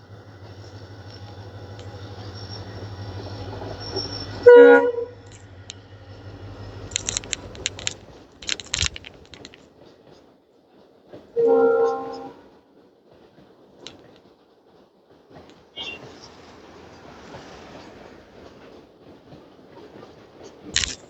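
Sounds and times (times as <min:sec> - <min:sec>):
locomotive horn blast: 0:00.0 - 0:08.4, 0:11.4 - 0:12.6
locomotive engine humming: 0:00.0 - 0:12.6, 0:14.8 - 0:21.0.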